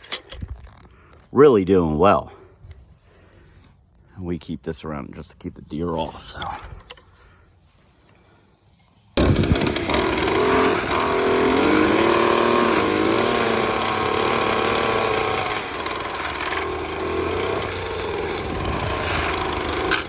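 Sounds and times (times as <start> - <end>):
string trimmer engine running: 9.2 - 20.0.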